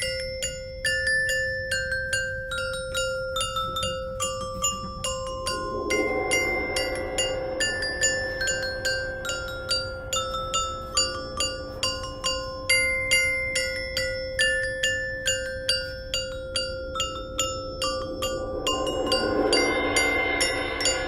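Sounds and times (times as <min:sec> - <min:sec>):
glockenspiel-like struck notes: 0:00.0 - 0:21.0
held low tone: 0:04.2 - 0:14.2, 0:16.5 - 0:21.0.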